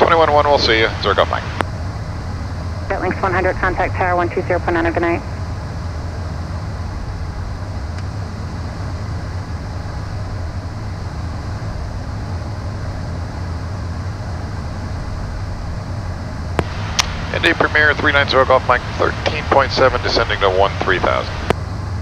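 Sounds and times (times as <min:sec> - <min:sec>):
low constant hum: 0:00.0 - 0:22.0
rush of air in cockpit: 0:05.2 - 0:22.0.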